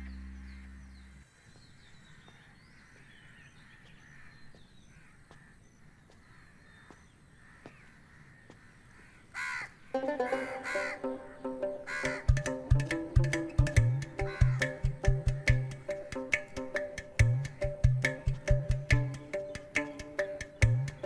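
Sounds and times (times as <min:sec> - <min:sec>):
birds calling: 0:00.0 - 0:21.0
crows cawing: 0:02.4 - 0:11.2, 0:11.8 - 0:12.6, 0:14.2 - 0:15.0.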